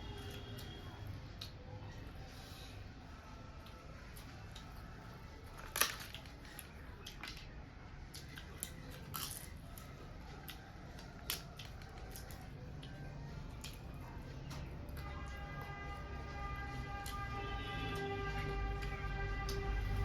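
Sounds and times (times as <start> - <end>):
chewing crunches: 8.1 - 15.0.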